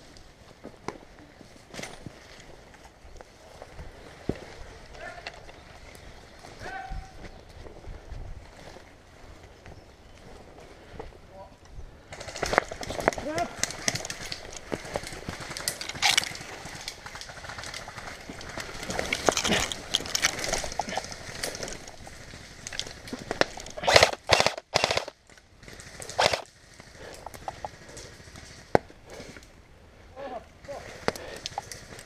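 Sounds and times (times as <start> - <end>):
airsoft guns firing: 22.1 - 25.2, 26.0 - 26.5.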